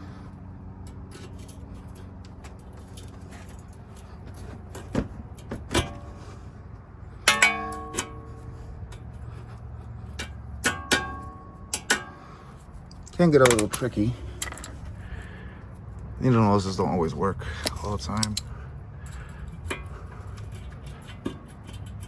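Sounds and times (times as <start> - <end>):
steady low hum: 0.0 - 22.0
ringing metal clinks: 7.2 - 8.6
hand tools clicking on metal: 12.9 - 15.0, 17.6 - 22.0.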